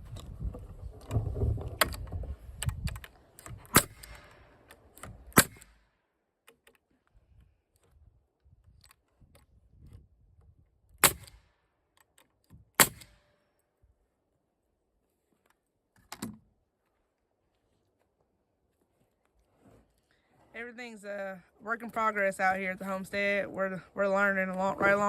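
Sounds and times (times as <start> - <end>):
nail gun shots: 3.7 - 4.3, 5.3 - 5.8, 11.0 - 11.4, 12.8 - 13.3.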